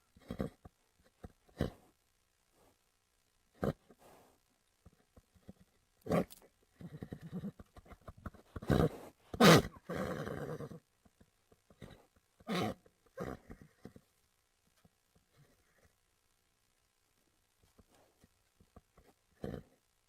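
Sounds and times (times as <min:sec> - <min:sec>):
horse vocalizing: 0:00.2 - 0:00.7, 0:05.5 - 0:10.8, 0:11.8 - 0:14.0, 0:19.4 - 0:19.8.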